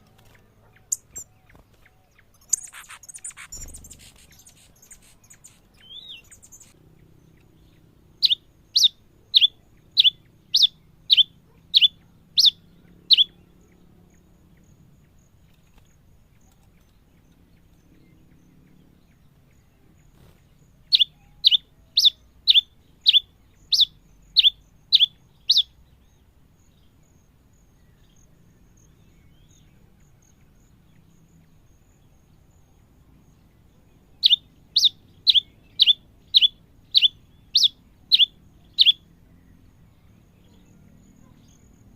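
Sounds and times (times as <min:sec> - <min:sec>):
finch whistling song: 0:00.6 - 0:06.8, 0:08.2 - 0:13.5, 0:20.9 - 0:25.8, 0:34.2 - 0:39.6.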